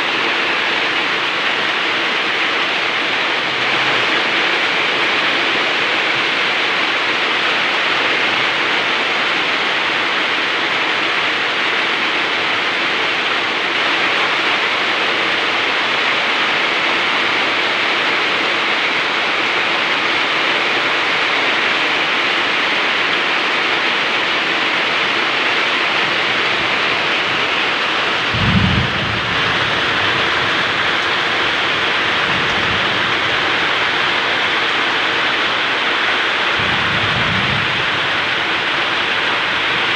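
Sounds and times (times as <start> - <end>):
heavy rain hissing: 0.0 - 39.9
low rumble of thunder: 28.2 - 33.9, 36.6 - 38.7.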